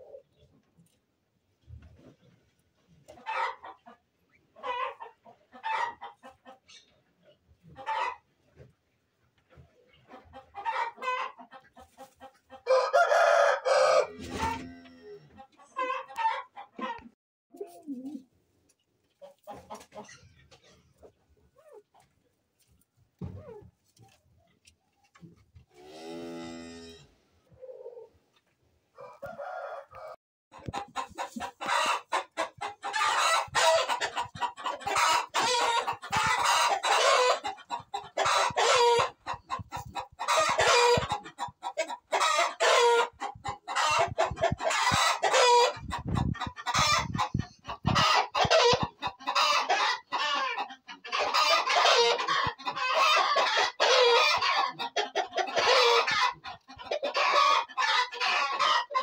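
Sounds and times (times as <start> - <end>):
chickens clucking: 0.0 - 25.7, 27.4 - 59.0
roosters crowing: 12.6 - 15.3, 32.9 - 37.6, 38.2 - 39.3, 43.8 - 45.8, 51.2 - 54.8.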